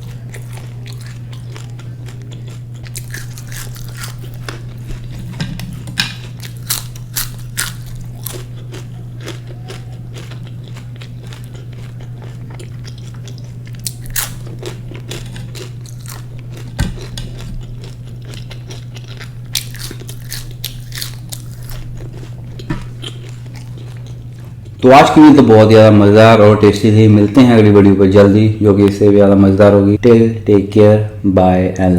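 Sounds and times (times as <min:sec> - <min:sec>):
crunchy chewing of snack: 0:00.0 - 0:24.9
steady low hum: 0:00.0 - 0:31.9.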